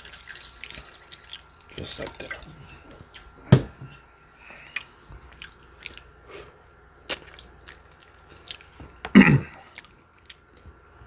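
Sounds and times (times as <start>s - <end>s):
person chewing: 0.0s - 1.8s, 4.6s - 11.0s.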